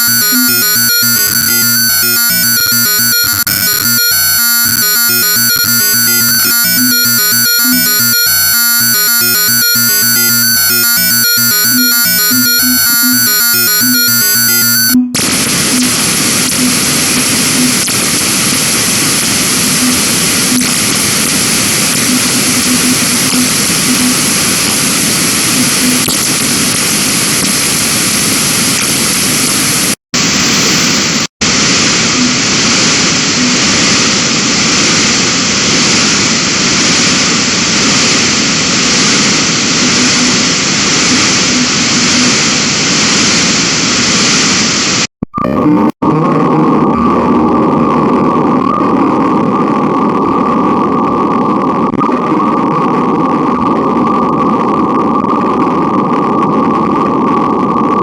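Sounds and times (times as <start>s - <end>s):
stepped beeping tones: 0.0s - 18.0s, 19.8s - 20.9s, 21.9s - 24.4s, 25.6s - 26.2s, 32.2s - 32.5s, 33.4s - 33.7s, 39.8s - 40.5s, 41.1s - 42.4s, 45.2s - 45.9s
harsh static noise: 0.0s - 58.0s
faint repeating low tone: 9.2s - 17.9s, 19.8s - 20.8s, 22.0s - 24.3s.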